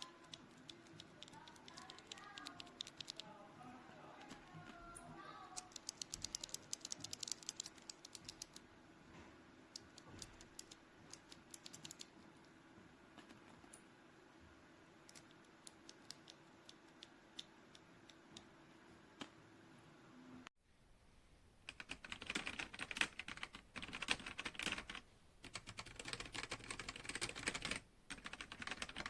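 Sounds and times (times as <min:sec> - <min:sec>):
mechanical keyboard typing: 0:00.0 - 0:03.3, 0:05.6 - 0:08.6, 0:09.8 - 0:12.2, 0:21.7 - 0:29.0.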